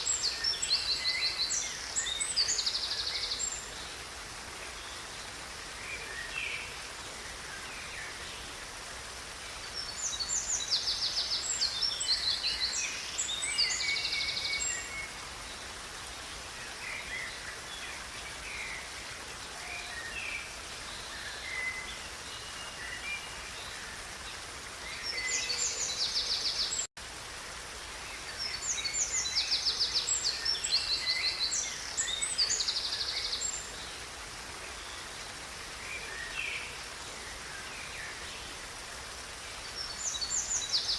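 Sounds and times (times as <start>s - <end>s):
songbirds trilling: 0.0s - 26.9s
river rushing: 0.0s - 40.9s.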